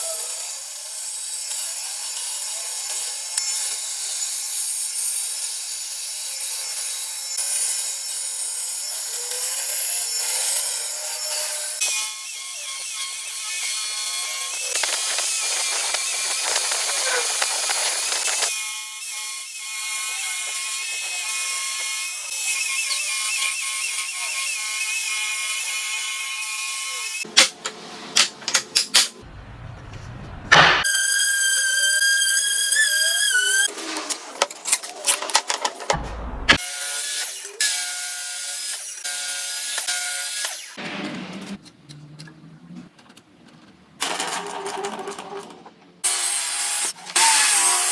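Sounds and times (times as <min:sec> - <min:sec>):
power tool whining: 0:00.2 - 0:27.3
low motor hum: 0:29.2 - 0:30.8, 0:36.0 - 0:36.6.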